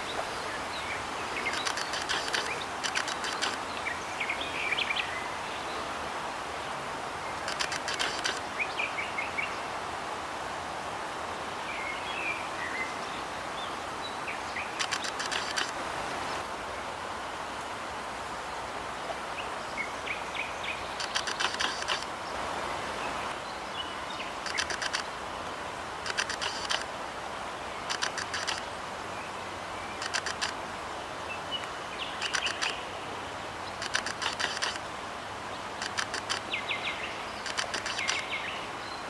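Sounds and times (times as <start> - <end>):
steady background hiss: 0.0 - 39.0
rapid rattling bird clicks: 1.5 - 3.6, 7.4 - 8.4, 14.8 - 15.8, 21.0 - 22.1, 24.4 - 25.1, 26.0 - 26.9, 27.9 - 28.6, 30.0 - 30.6, 32.2 - 32.8, 33.8 - 34.8, 35.8 - 36.5, 37.4 - 38.2.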